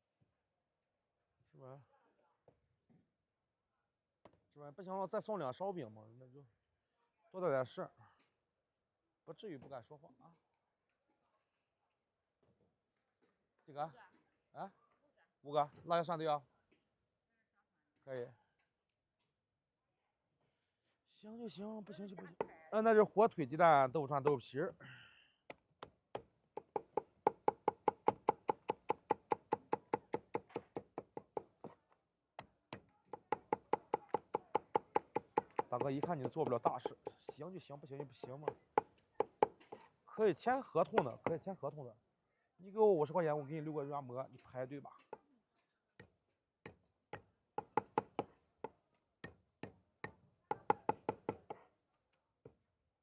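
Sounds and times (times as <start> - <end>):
cleaver chopping meat on wood: 25.5 - 31.8, 32.4 - 37.3, 41.0 - 41.4.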